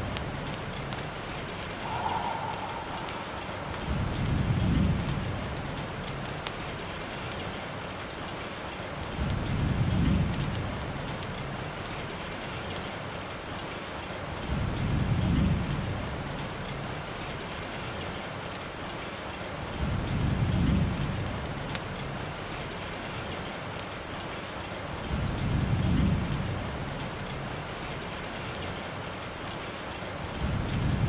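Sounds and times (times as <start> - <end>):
steady rain falling: 0.0 - 31.0
low rumble: 1.6 - 5.7.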